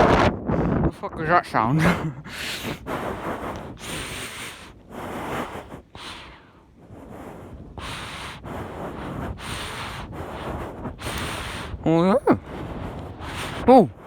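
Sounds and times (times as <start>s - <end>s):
wind noise: 0.0s - 14.0s
heavy out-of-breath breathing: 0.4s - 14.0s.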